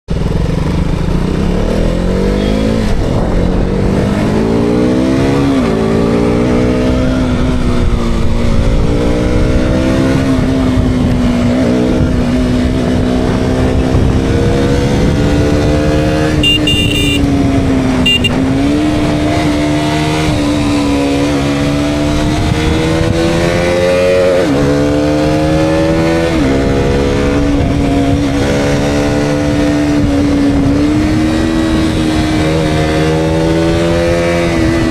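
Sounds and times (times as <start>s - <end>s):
motorcycle engine accelerating through gears: 0.1s - 34.9s
short high beeps: 16.4s - 17.3s, 18.0s - 18.4s.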